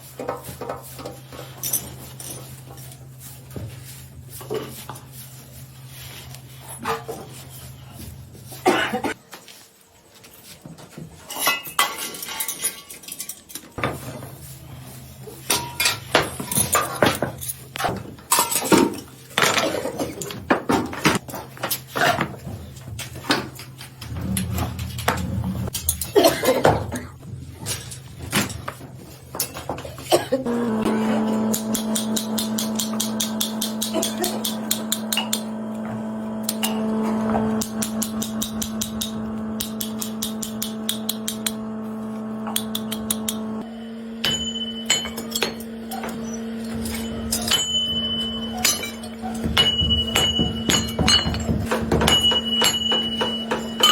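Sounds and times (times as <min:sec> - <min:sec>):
low hum: 0:30.5 - 0:51.0.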